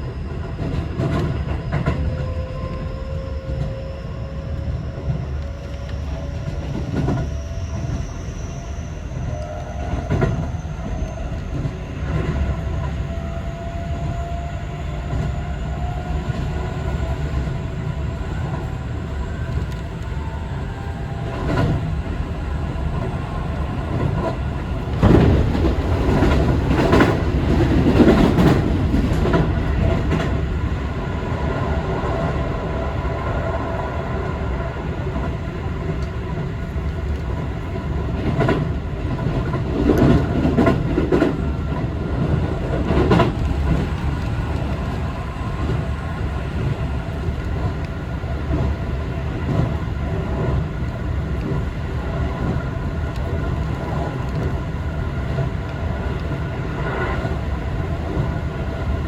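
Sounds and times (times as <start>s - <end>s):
train motor whine: 0.0s - 33.8s
electric train rumble: 0.0s - 59.0s.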